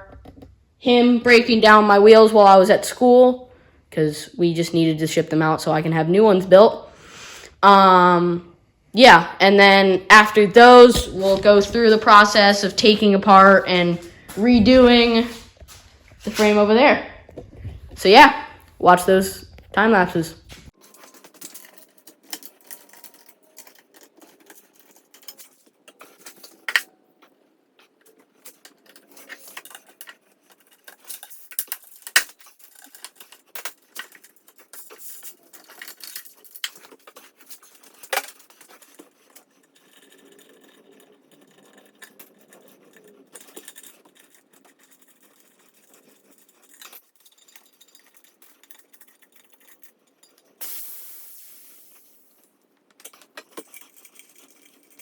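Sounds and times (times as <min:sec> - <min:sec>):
metal tools clinking and rattling: 0:20.5 - 0:50.6, 0:52.3 - 0:55.0.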